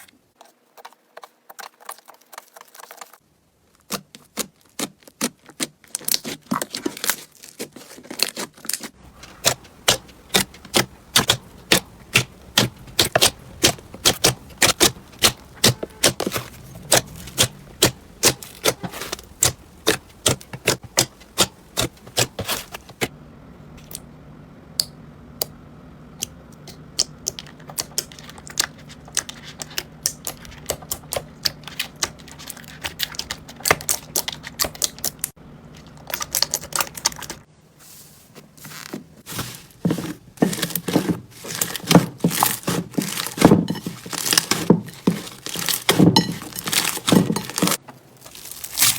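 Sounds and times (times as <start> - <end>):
low steady hum: 9.0 - 48.9.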